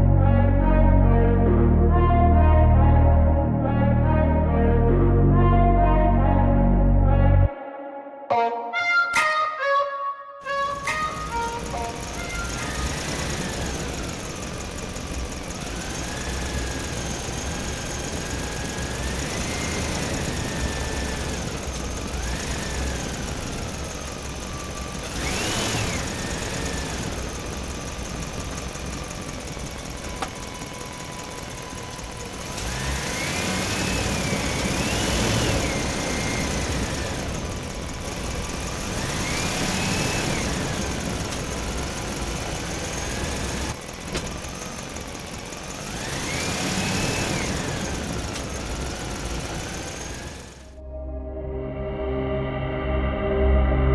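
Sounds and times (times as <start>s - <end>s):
toy car electric motor whining: 10.8s - 50.6s
steady running noise: 10.8s - 50.7s.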